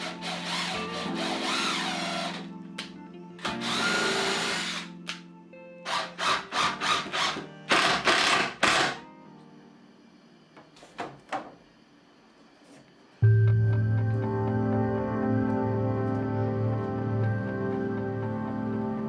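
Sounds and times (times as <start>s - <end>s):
hand-held power tool running: 0.0s - 2.5s, 3.4s - 4.9s, 5.8s - 9.0s
background music: 0.0s - 10.2s, 13.2s - 19.0s.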